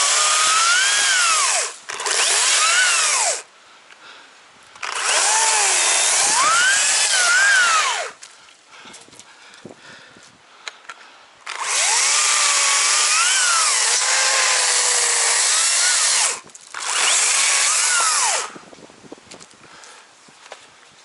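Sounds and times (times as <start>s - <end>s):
chainsaw cutting wood: 0.0s - 3.5s, 4.8s - 8.2s, 11.5s - 18.6s.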